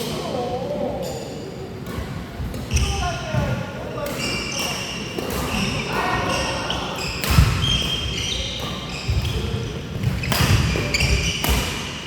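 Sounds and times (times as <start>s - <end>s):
shoes squeaking: 4.0s - 12.0s
racket striking shuttlecock: 10.0s - 12.0s.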